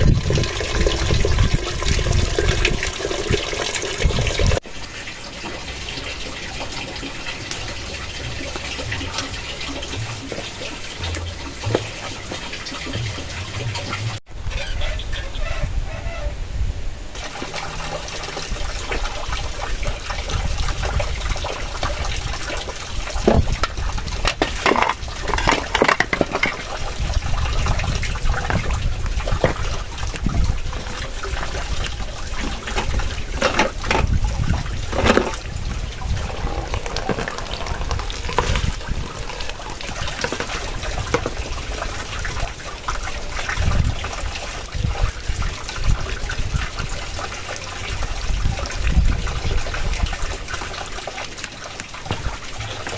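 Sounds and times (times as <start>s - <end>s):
strong wind gusting: 0.0s - 4.6s, 19.7s - 42.5s
short rattles: 23.2s - 26.8s, 32.3s - 35.6s.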